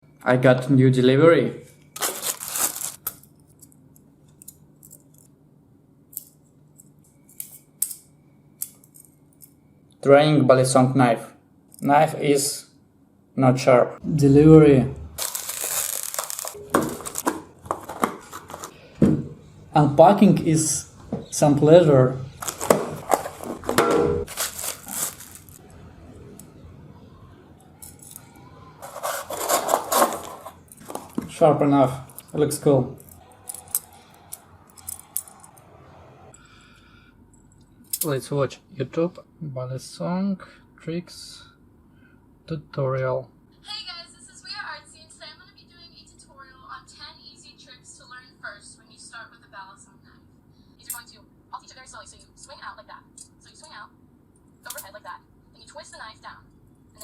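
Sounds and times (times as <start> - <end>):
packaging scraping and rustling: 2.0 - 3.3, 15.2 - 18.8, 22.4 - 25.6, 28.8 - 31.4.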